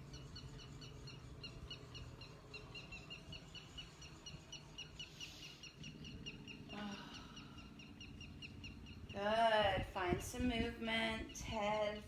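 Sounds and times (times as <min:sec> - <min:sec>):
bird chirping: 0:00.0 - 0:09.6
low outdoor rumble: 0:00.0 - 0:12.0.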